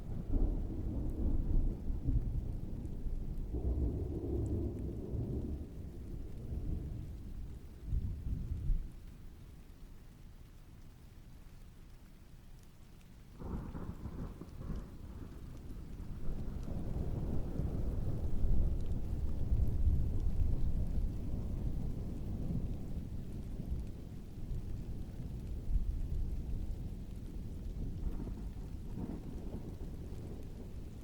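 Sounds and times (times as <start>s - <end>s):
distant thunder rolling: 0.0s - 9.0s, 13.4s - 31.0s
heavy rain: 0.0s - 31.0s.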